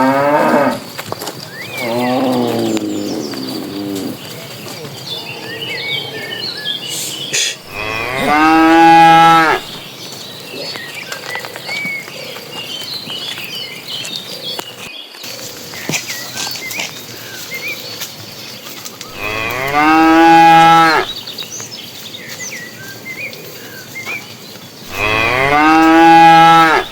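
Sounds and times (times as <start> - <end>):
cows mooing: 0.0 - 0.8, 1.8 - 4.4, 7.7 - 9.8, 19.1 - 21.2, 24.9 - 26.9
birds chirping faintly: 0.0 - 26.9.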